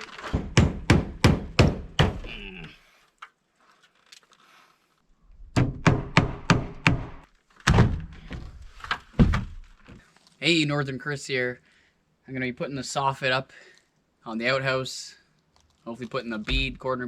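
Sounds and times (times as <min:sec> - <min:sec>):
hammer driving nails into wood: 0:00.2 - 0:02.3.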